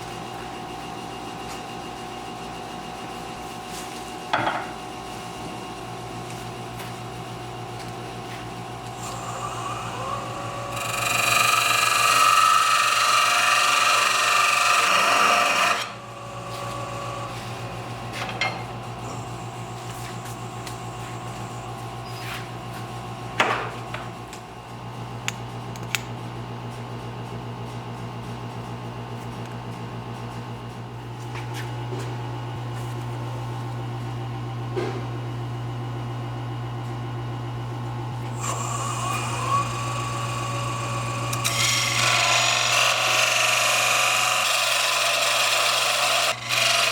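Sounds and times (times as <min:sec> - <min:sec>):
lathe motor humming: 0:06.6 - 0:46.9
tool scraping spinning wood: 0:08.2 - 0:24.1, 0:38.2 - 0:46.9.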